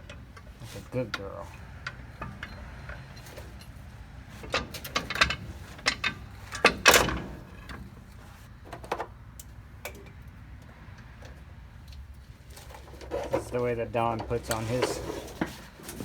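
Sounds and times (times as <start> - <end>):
metal parts clinking and clanking: 0.0 - 9.0, 12.5 - 16.0.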